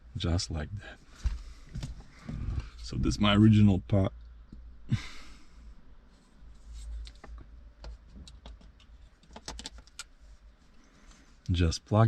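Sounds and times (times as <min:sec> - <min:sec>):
plastic parts clicking: 0:08.2 - 0:10.1.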